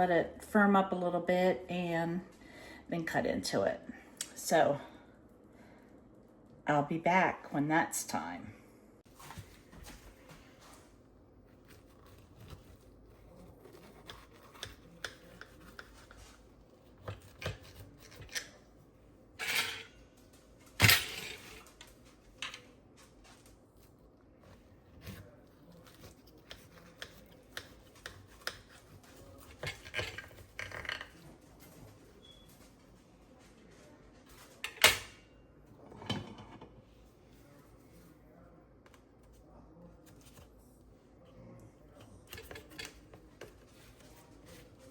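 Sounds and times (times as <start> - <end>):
dishes and utensils clattering: 19.4 - 20.0, 35.9 - 36.8.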